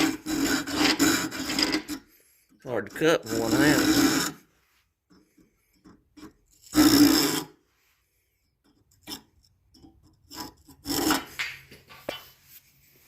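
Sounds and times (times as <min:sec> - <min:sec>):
hand saw rasping through wood: 0:00.0 - 0:04.5, 0:05.3 - 0:07.6, 0:09.0 - 0:11.5.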